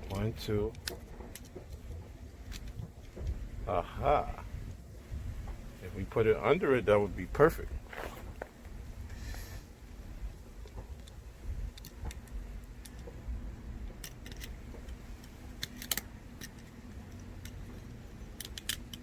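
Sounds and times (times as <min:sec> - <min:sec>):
low handling rumble: 0:00.0 - 0:19.0
plug parts clicking: 0:13.9 - 0:19.0.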